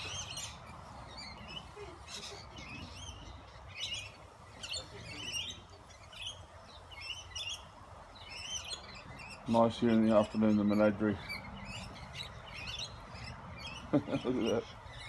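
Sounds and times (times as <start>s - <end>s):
lorikeets chattering: 0.0s - 15.0s.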